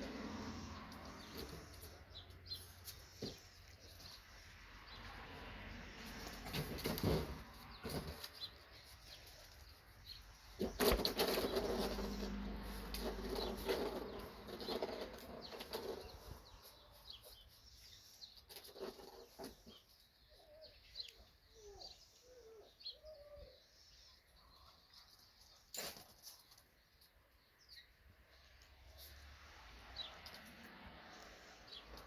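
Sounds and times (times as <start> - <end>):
puppies scuffling and scrabbling: 6.0 - 17.6, 18.3 - 20.0
puppy squeaky whimpers: 21.5 - 23.6.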